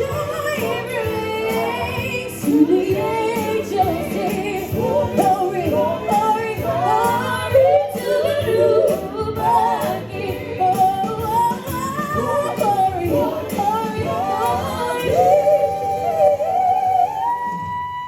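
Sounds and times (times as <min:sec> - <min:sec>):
gospel singing: 0:00.0 - 0:17.5.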